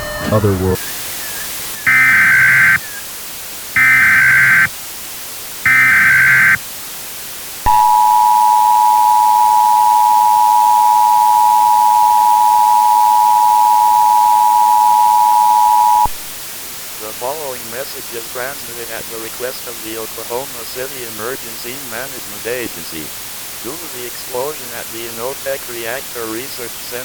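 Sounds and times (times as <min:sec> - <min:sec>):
two-tone attention signal: 0:01.8 - 0:02.8, 0:03.8 - 0:04.7, 0:05.7 - 0:06.6, 0:07.7 - 0:16.1
warbling data tones: 0:01.8 - 0:02.9, 0:03.8 - 0:04.7, 0:05.7 - 0:06.6, 0:07.7 - 0:16.1.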